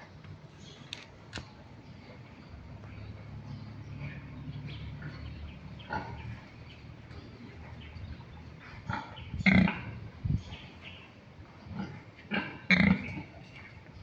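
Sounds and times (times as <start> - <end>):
pigs grunting: 2.8 - 10.1, 11.6 - 13.8.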